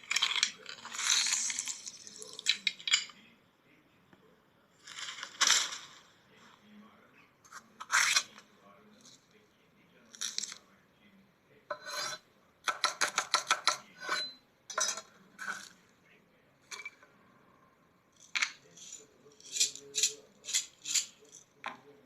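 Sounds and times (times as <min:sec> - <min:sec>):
utensils scraping against dishes: 0:11.7 - 0:15.8, 0:16.7 - 0:17.1, 0:18.2 - 0:21.5.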